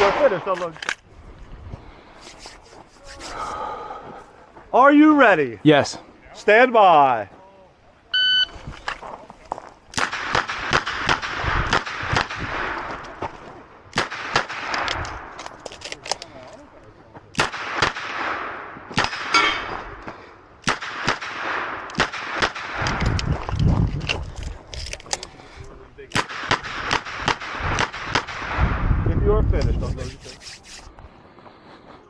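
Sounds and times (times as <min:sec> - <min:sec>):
fainter sharp gunshots: 0:17.4 - 0:19.3, 0:20.6 - 0:22.9, 0:26.1 - 0:28.8.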